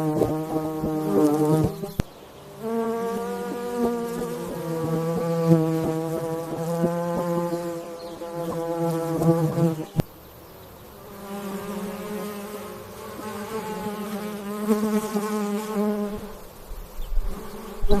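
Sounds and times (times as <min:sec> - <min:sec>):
bee buzzing: 0:00.0 - 0:18.0.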